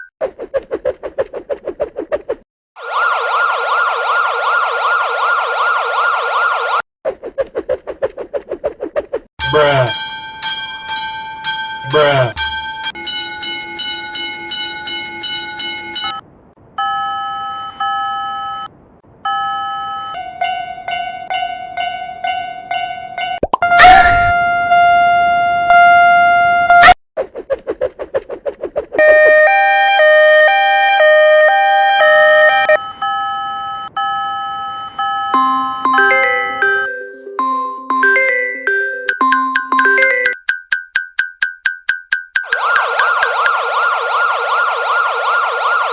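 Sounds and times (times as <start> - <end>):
electronic crossing ding: 35.4 - 43.5
alternating electronic warning tones: 42.4 - 43.6.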